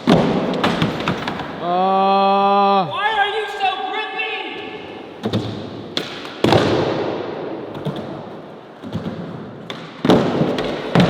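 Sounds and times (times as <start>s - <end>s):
skateboard landing slap: 0.0s - 1.6s, 5.2s - 11.0s
skateboard clacks: 7.7s - 11.0s
skateboard wheels rolling: 7.7s - 11.0s.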